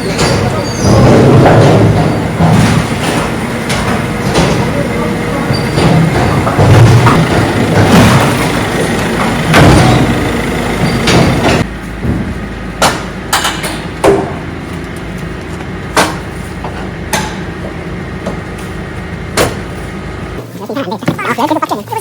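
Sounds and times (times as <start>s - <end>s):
loud rumbling noise: 0.0s - 20.4s
steady hum: 0.0s - 20.6s
sharp hard knocks: 5.7s - 14.4s, 19.4s - 19.7s.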